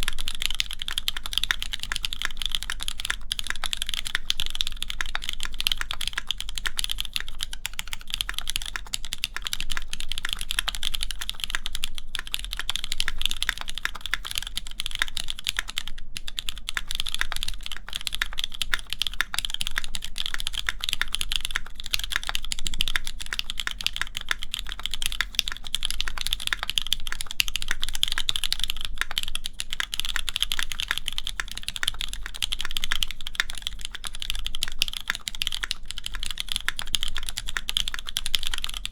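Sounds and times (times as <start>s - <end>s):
mechanical keyboard typing: 0.0s - 38.9s.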